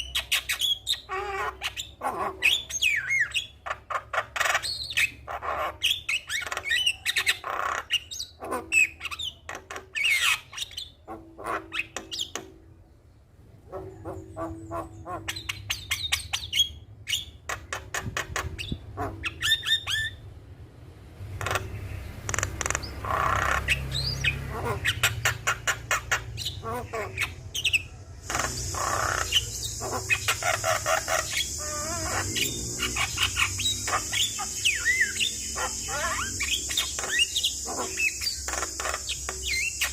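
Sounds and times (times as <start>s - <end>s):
myna bird calling: 0.0s - 12.7s, 13.6s - 20.2s, 21.4s - 39.9s.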